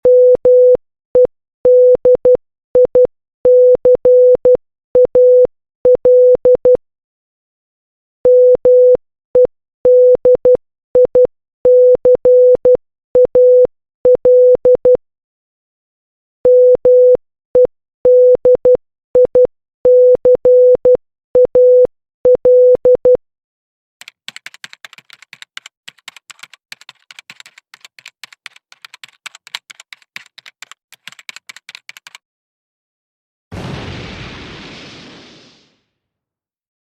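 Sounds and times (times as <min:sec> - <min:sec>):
morse code beeps: 0:00.0 - 0:06.8
rapid irregular clicking: 0:24.0 - 0:32.2.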